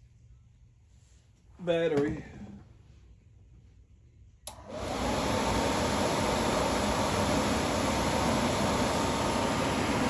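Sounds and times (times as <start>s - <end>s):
furnace blower fan running: 4.3s - 10.0s.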